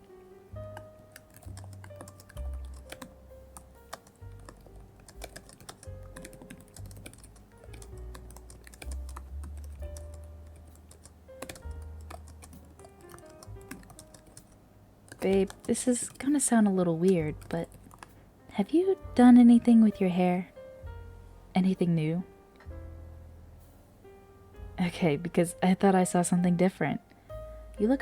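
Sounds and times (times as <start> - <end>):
background music: 0.0 - 28.0
keyboard typing: 0.6 - 18.2.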